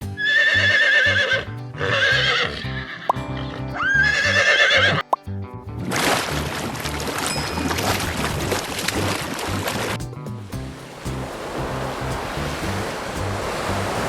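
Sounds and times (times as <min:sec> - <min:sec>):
music with low beat: 0:00.0 - 0:14.0
rushing noise: 0:06.0 - 0:14.0.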